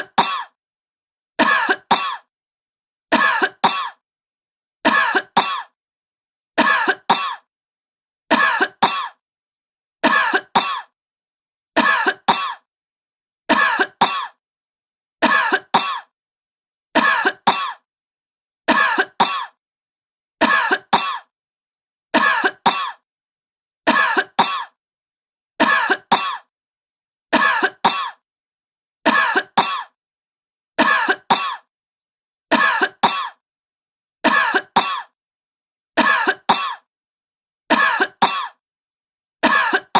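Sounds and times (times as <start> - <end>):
woman coughing: 0.1 - 0.6, 1.4 - 2.3, 3.2 - 4.0, 4.9 - 5.8, 6.6 - 7.5, 8.3 - 9.2, 10.0 - 11.0, 11.8 - 12.7, 13.5 - 14.4, 15.2 - 16.1, 17.0 - 17.9, 18.7 - 19.6, 20.4 - 21.3, 22.2 - 23.0, 23.9 - 24.8, 25.6 - 26.5, 27.4 - 28.2, 29.1 - 30.0, 30.8 - 31.7, 32.6 - 33.4, 34.3 - 35.2, 36.0 - 36.9, 37.7 - 38.6, 39.4 - 39.9.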